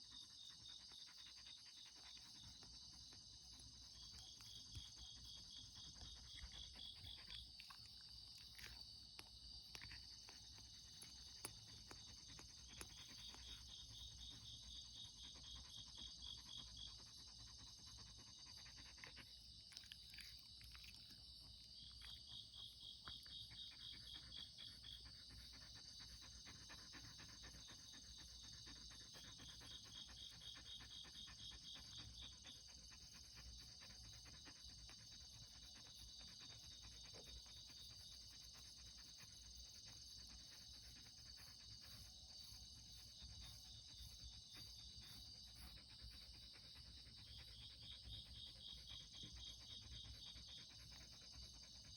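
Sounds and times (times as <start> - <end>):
insect pulsed trill: 20.8 - 51.9.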